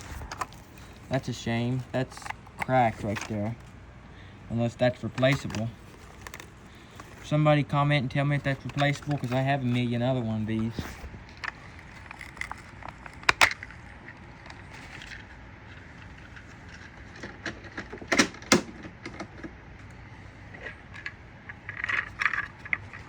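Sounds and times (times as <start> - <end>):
plastic clicks and knocks: 16.7 - 19.6.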